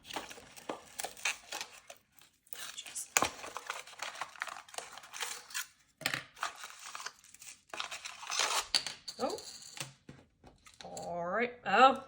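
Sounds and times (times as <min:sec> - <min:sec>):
packaging crinkling and tearing: 0:00.0 - 0:08.7.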